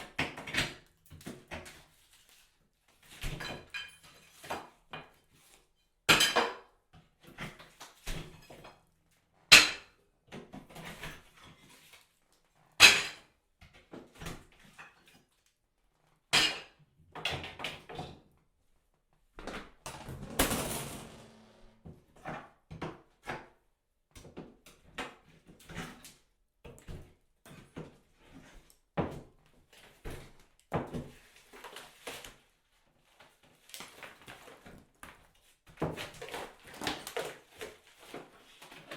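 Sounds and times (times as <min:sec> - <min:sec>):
knocks and strikes on tiles: 0:19.9 - 0:21.8.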